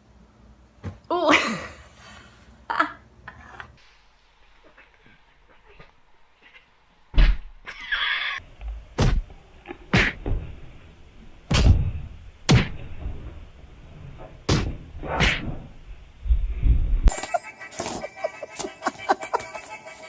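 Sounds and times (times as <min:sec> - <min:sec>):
dull low thumps: 0:15.8 - 0:17.1.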